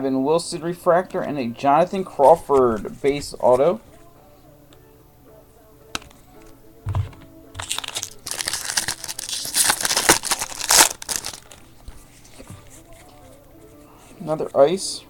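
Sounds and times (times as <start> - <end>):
foil wrapper tearing and crinkling: 7.6 - 11.7.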